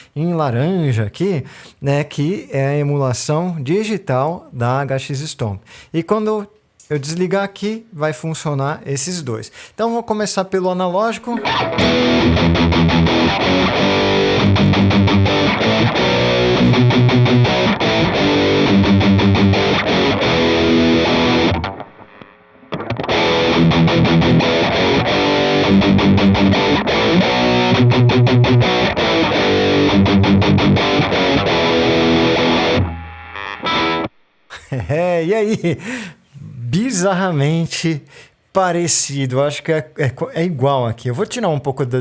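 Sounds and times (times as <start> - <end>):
overdriven electric guitar riff: 11.4 - 34.2.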